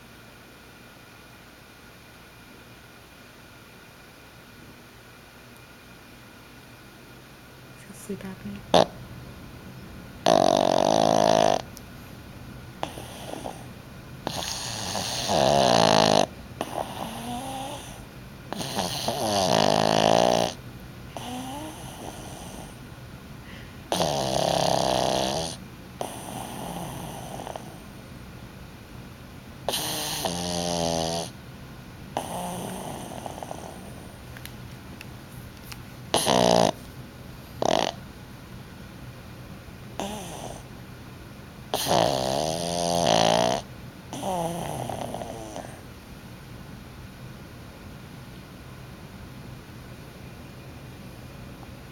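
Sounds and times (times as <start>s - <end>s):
dog snoring: 8.7s - 9.0s, 10.2s - 11.8s, 12.8s - 22.9s, 23.5s - 28.1s, 29.6s - 31.4s, 32.1s - 34.3s, 36.1s - 36.9s, 37.5s - 38.0s, 40.0s - 40.7s, 41.7s - 45.9s
dog breathing quietly: 12.8s - 28.2s, 32.2s - 34.3s, 40.0s - 40.7s, 41.7s - 45.9s.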